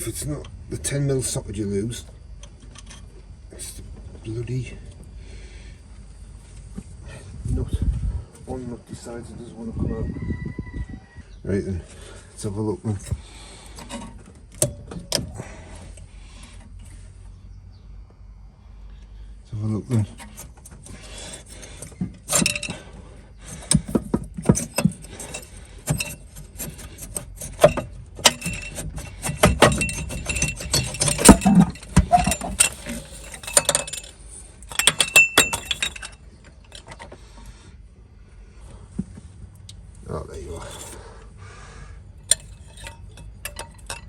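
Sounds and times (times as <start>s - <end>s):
metal tools clinking and clattering: 20.2s - 37.1s, 42.2s - 44.0s.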